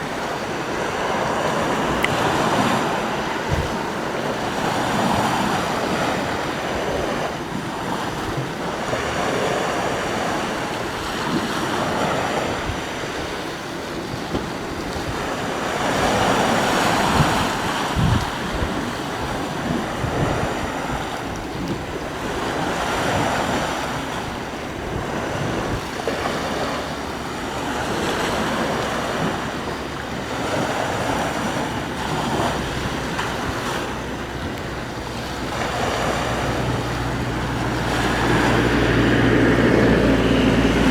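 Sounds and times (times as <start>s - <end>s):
sea waves breaking: 0.0s - 40.9s
wind buffeting microphone: 0.0s - 40.9s.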